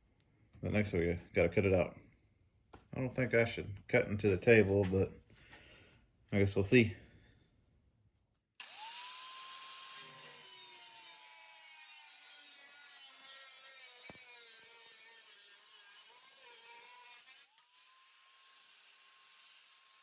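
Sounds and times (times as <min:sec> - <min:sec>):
power tool cutting sheet metal: 0:08.6 - 0:20.0.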